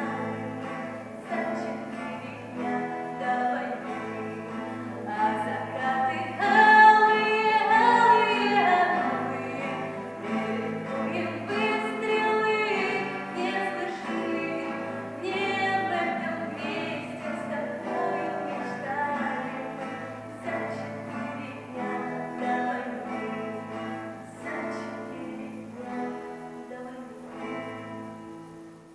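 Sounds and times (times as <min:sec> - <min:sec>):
young voices singing: 0:00.0 - 0:28.2
acoustic guitar: 0:00.0 - 0:28.9.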